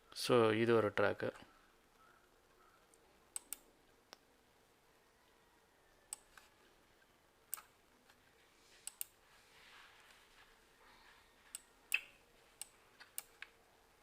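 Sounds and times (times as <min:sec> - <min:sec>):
computer mouse clicks: 0:02.8 - 0:04.2, 0:08.8 - 0:09.2.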